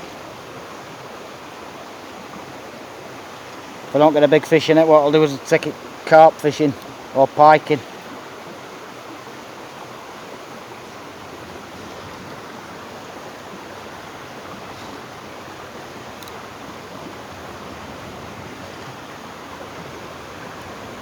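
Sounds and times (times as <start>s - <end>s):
river water rushing: 0.0s - 21.0s
faint click: 16.2s - 16.4s.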